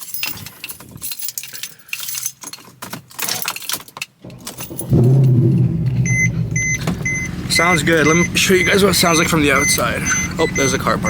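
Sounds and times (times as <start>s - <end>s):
car keys jangling: 0.0s - 7.2s
car engine starting and running: 4.2s - 11.0s.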